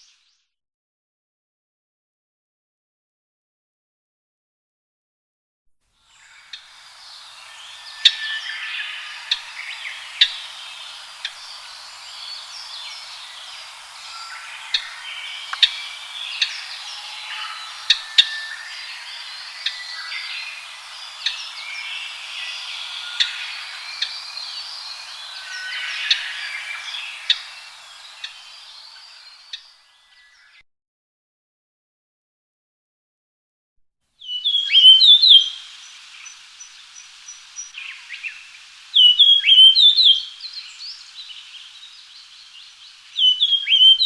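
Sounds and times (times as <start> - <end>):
birds chirping and twittering: 6.1 - 30.4, 34.4 - 44.0
sharp short bird calls: 6.2 - 29.8.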